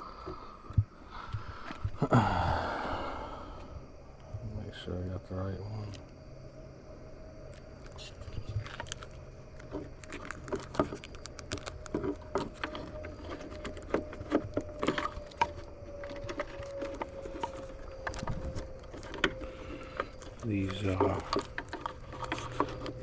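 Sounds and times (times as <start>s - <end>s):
faint steady hum: 0.0s - 23.0s
plastic parts clicking and rattling: 8.6s - 23.0s.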